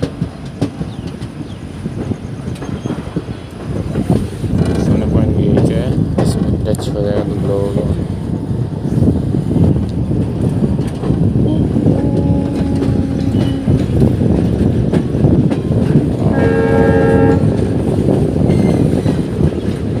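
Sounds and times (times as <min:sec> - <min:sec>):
train rumbling on rails: 0:00.0 - 0:20.0
train horn blasts: 0:11.5 - 0:14.3, 0:16.2 - 0:17.8.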